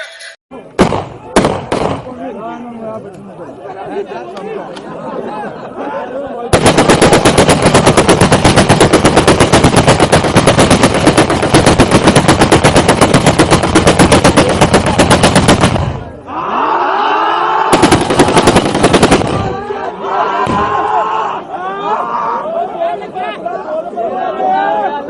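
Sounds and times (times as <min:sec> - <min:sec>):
automatic gunfire: 0:00.8 - 0:02.1, 0:06.5 - 0:16.1, 0:17.7 - 0:19.6
voices calling out: 0:19.3 - 0:25.0.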